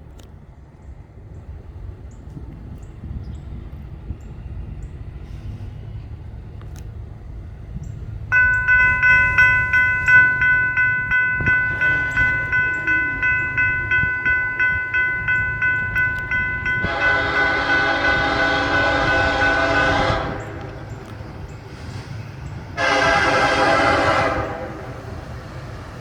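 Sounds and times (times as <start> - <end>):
railroad crossing bell ringing: 7.9 - 21.8, 22.7 - 25.4
locomotive air horn blast: 16.7 - 21.3, 22.8 - 25.4.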